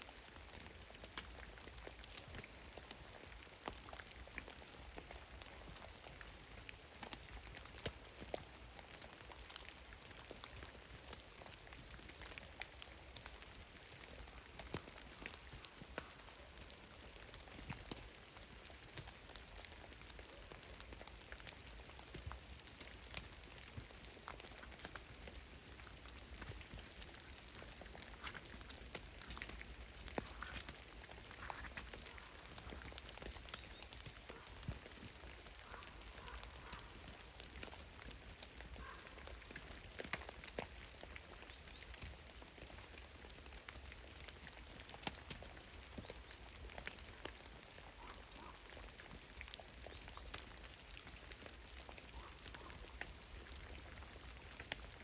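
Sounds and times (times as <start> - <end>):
meltwater drops pattering: 22.0 - 42.1.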